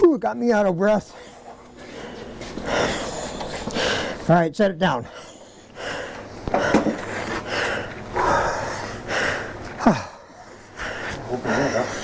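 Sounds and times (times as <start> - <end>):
man breathing hard and gasping: 1.1 - 4.3, 5.0 - 12.0
man sighing: 9.8 - 10.3.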